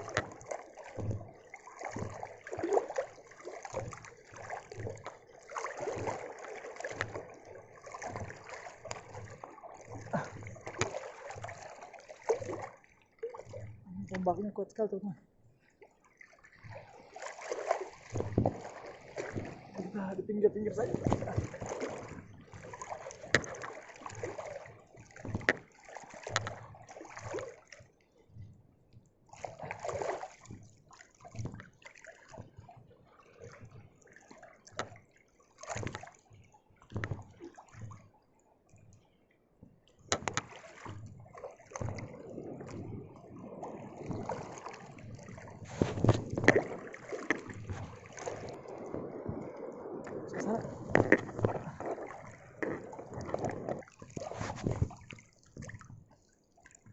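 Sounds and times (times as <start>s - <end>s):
sea waves sloshing: 0.0s - 27.8s, 29.3s - 38.1s, 40.1s - 56.9s
knocks and scrapes: 45.6s - 48.4s, 50.3s - 55.8s.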